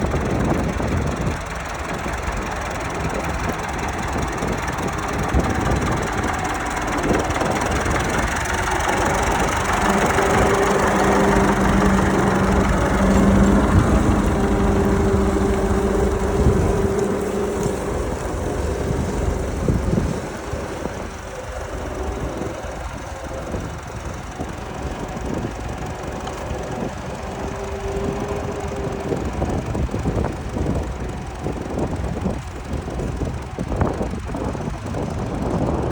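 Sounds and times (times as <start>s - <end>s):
tractor engine running: 0.0s - 35.9s.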